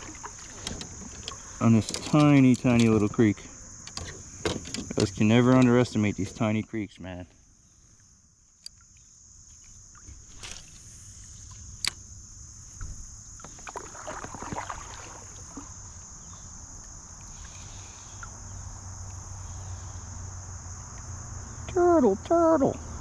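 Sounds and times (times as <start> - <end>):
water splashing and sloshing: 0.0 - 3.3, 7.8 - 19.3
insect chorus: 0.0 - 23.0.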